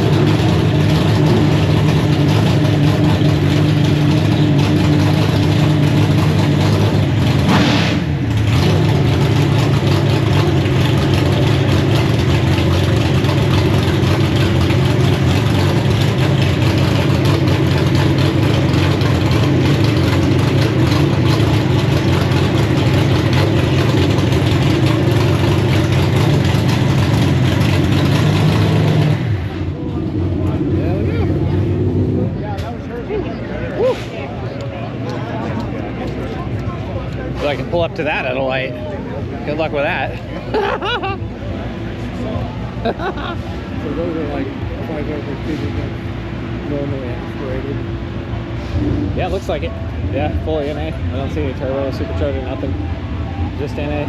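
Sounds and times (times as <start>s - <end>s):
car engine idling loudly: 0.0s - 54.0s
engine rev: 0.0s - 54.0s.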